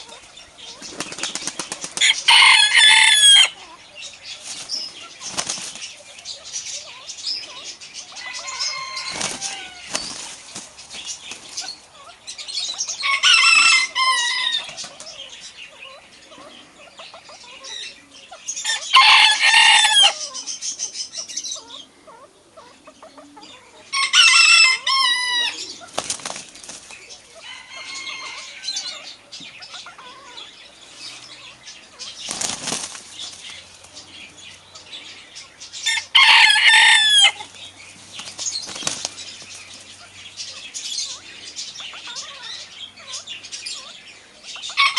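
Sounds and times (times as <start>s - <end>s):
chicken calls: 0.0s - 44.9s
rooster crowing: 2.0s - 3.6s, 8.2s - 9.9s, 13.0s - 14.7s, 18.7s - 20.3s, 23.9s - 25.6s, 27.4s - 29.1s, 35.8s - 37.5s.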